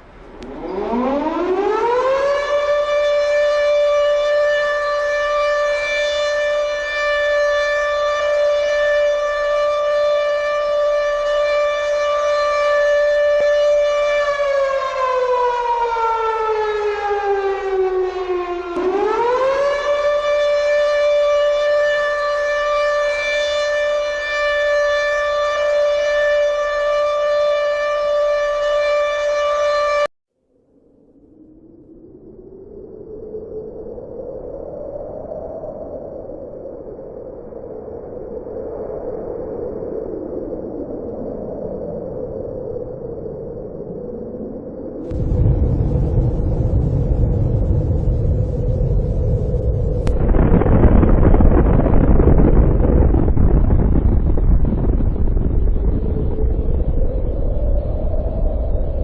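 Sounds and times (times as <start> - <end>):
air-raid siren wailing: 0.0 - 30.1, 31.2 - 59.0.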